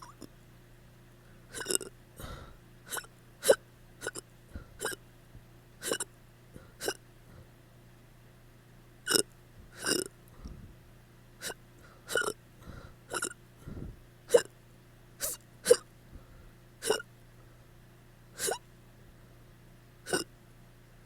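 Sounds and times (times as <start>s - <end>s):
person hiccuping: 0.0s - 0.3s, 1.5s - 1.9s, 2.9s - 4.2s, 4.8s - 5.0s, 5.8s - 6.1s, 6.8s - 7.0s, 9.1s - 10.1s, 11.4s - 12.4s, 13.1s - 13.4s, 14.3s - 14.5s, 15.2s - 15.9s, 16.8s - 17.1s, 18.4s - 18.6s, 20.0s - 20.3s
soft breathing: 1.2s - 5.0s, 9.6s - 10.8s, 11.4s - 14.5s, 16.1s - 17.6s.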